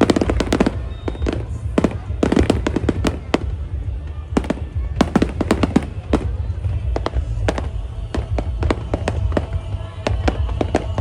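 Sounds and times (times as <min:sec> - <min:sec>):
fireworks bursting with sharp bangs: 0:00.0 - 0:11.0.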